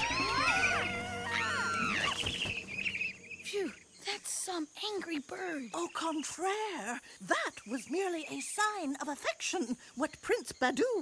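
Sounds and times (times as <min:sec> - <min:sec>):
background music: 0:00.0 - 0:05.9.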